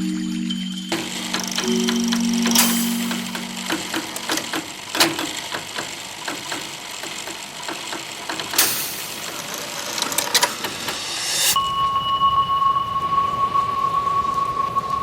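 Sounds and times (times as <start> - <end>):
steady high tone: 0.0 - 4.9, 10.5 - 15.0
clockwork mechanism ticking: 0.9 - 11.6.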